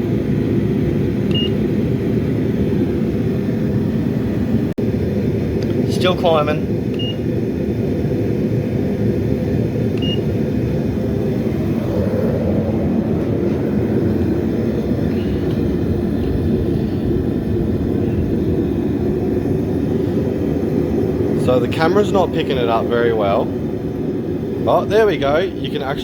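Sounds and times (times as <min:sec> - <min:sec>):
furnace burner roaring: 0:00.0 - 0:26.0
short faint beep: 0:10.0 - 0:10.2.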